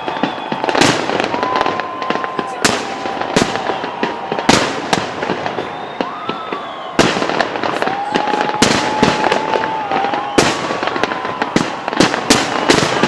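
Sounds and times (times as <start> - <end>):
thin steady whistle-like tone: 0.0 - 0.8, 5.5 - 7.1, 10.0 - 10.8
firework bangs: 0.0 - 13.0
firework crackling: 0.0 - 13.0.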